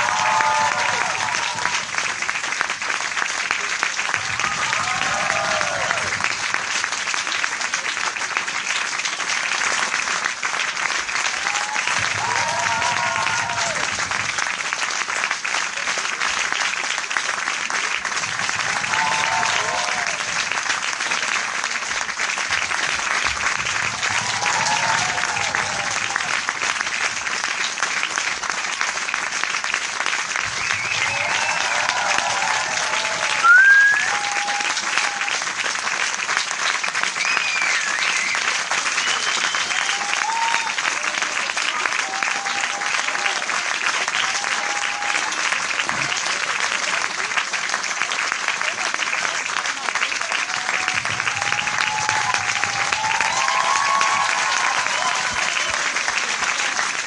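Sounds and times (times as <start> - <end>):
crowd applauding: 0.0 - 57.0.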